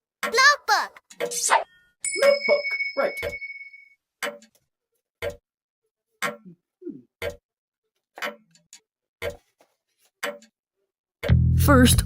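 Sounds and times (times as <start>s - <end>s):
clock ticking: 0.2s - 1.4s, 4.2s - 4.6s, 5.2s - 5.4s, 7.2s - 7.4s.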